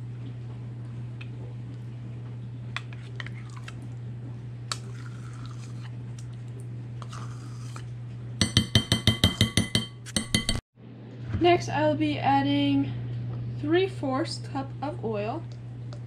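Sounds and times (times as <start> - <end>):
steady low hum: 0.0 - 16.0
utensil scraping in bowl: 2.8 - 3.8, 7.0 - 7.9
metal utensil tapping dish: 8.4 - 10.6.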